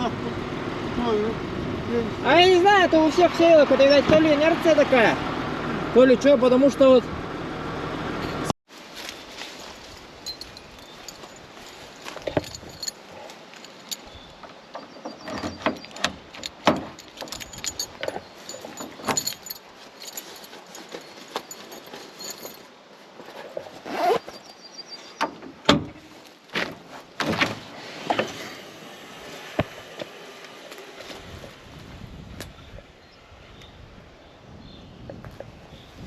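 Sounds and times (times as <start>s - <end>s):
knocks clanks and rattles: 10.2s - 22.7s.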